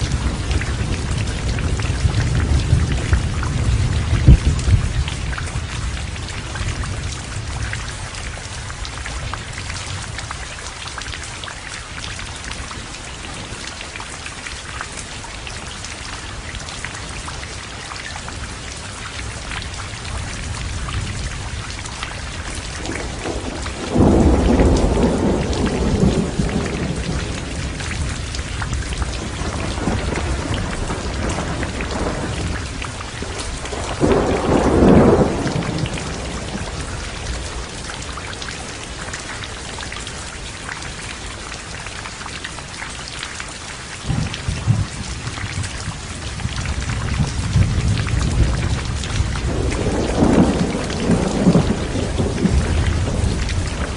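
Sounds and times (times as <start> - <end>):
thunder: 0.0 - 7.3, 22.8 - 37.2, 44.1 - 53.9
heavy rain: 0.0 - 53.9.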